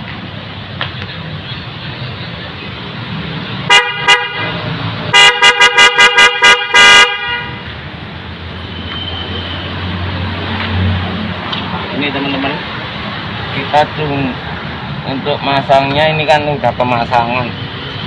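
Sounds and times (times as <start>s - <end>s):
car horn honking: 3.7s - 7.7s.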